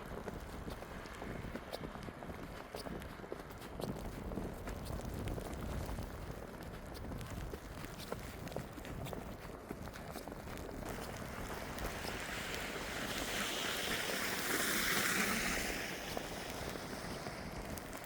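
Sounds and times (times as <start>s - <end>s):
tyres hissing on slush: 11.0s - 18.0s.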